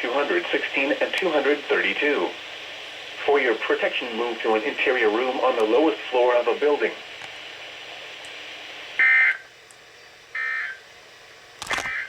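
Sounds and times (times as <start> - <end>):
faint hiss: 0.0 - 9.0.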